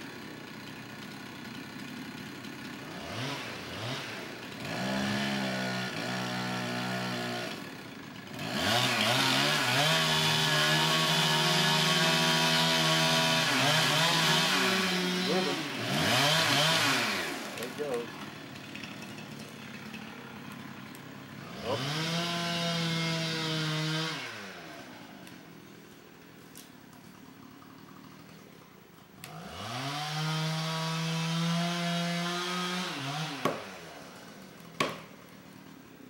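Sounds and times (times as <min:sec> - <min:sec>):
chainsaw revving: 0:00.0 - 0:36.0
sharp knocks: 0:34.8 - 0:35.1.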